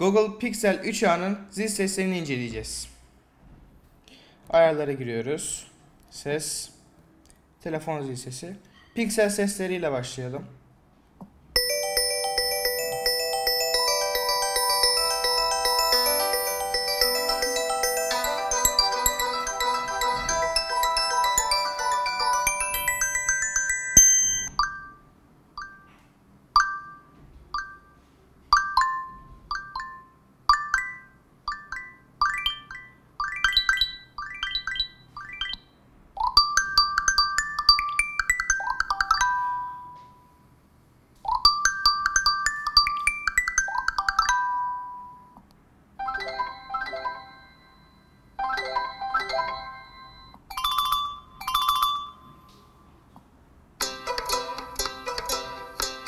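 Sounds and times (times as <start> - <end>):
electronic ringtone melodies: 11.6 - 26.0, 26.6 - 40.4, 41.3 - 45.4, 46.0 - 53.0, 53.8 - 56.0.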